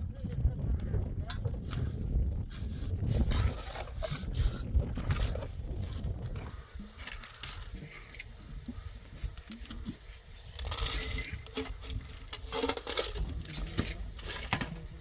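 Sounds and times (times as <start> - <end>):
small hard objects clinking: 10.5 - 14.7.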